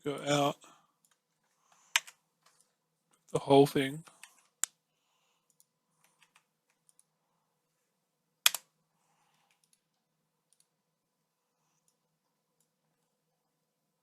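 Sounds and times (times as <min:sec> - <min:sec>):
sharp clicks: 0:08.4 - 0:08.7.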